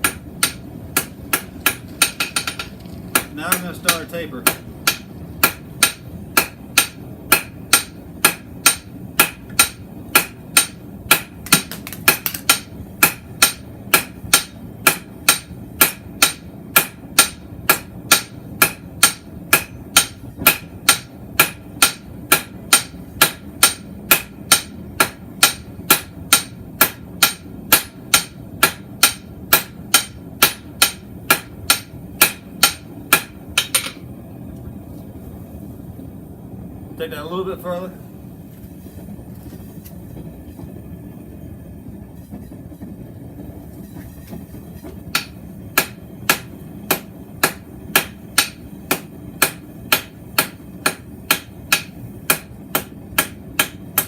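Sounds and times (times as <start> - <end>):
hammer striking steel on anvil: 0.0 - 34.1, 45.1 - 54.0.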